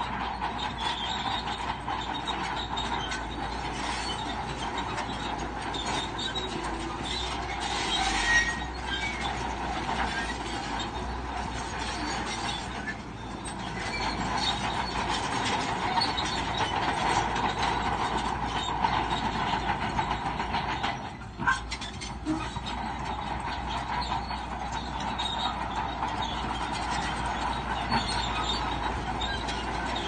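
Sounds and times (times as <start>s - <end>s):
bulldozer tracks clanking and squealing: 0.0s - 30.0s
diesel engine running: 0.0s - 30.0s.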